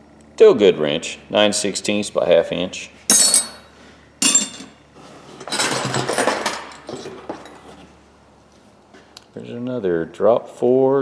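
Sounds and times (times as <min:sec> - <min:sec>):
steel wrenches clinking: 0:03.1 - 0:03.6, 0:04.2 - 0:04.8, 0:05.4 - 0:07.6.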